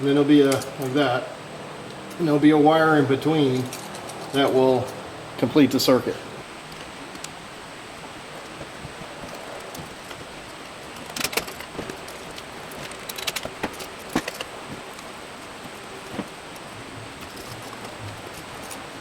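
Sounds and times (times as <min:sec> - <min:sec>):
steady background hiss: 0:00.0 - 0:19.0
wiring parts clicking: 0:00.4 - 0:01.0, 0:08.4 - 0:19.0.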